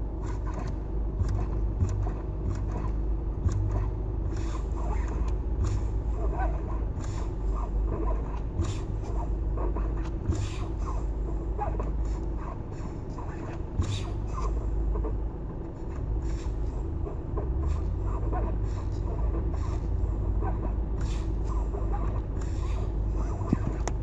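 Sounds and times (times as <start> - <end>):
low rumble: 0.0 - 24.0.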